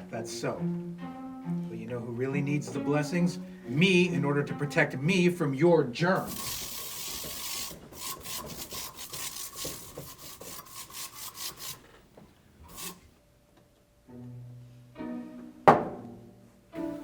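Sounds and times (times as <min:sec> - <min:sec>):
low bowed strings: 0:00.0 - 0:05.2.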